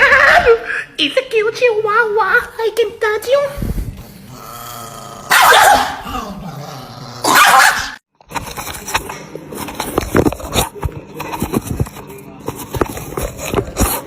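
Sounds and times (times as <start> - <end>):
dog growling: 3.9 - 7.4
dog barking harshly: 5.2 - 6.2, 7.2 - 8.0.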